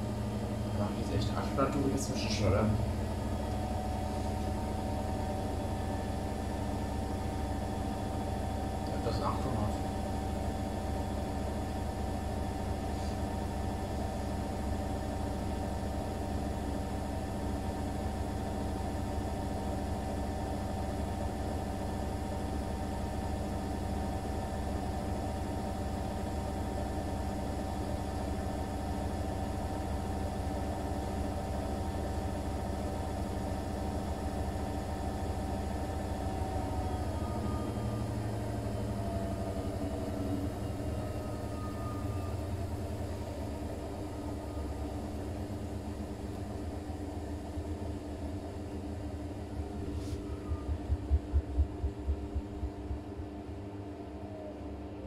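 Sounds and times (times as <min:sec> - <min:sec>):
washing machine spinning: 0:00.0 - 0:55.0.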